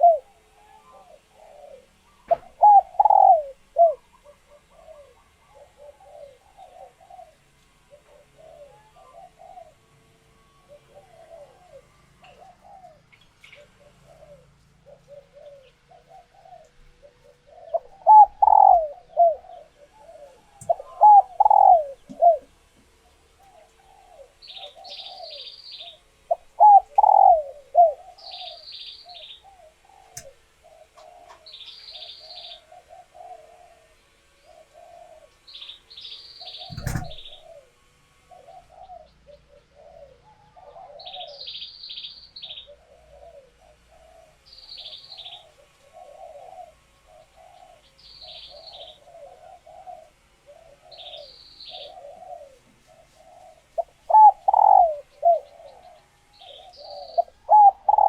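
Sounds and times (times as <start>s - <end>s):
dove cooing: 0.0s - 58.0s
small bird chirping: 34.4s - 37.7s, 50.7s - 58.0s
sharp click: 36.7s - 37.5s.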